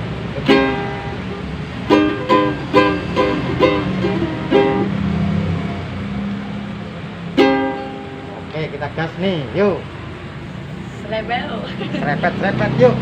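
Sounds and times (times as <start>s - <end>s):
ukulele strummed: 0.0s - 5.8s, 7.3s - 8.6s.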